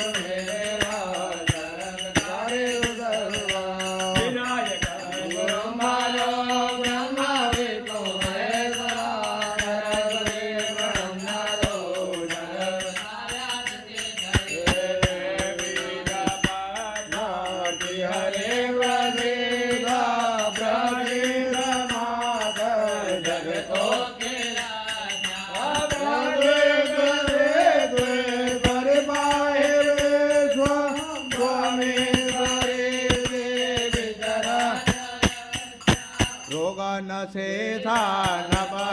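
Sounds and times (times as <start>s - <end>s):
light percussive clicks: 0.0s - 36.6s
person chanting melodically: 0.0s - 38.9s.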